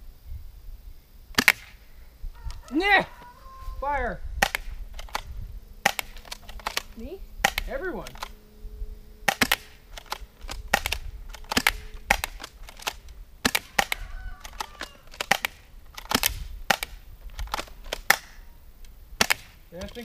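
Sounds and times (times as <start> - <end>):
airsoft guns firing: 1.4 - 1.8, 4.4 - 8.4, 9.2 - 20.0.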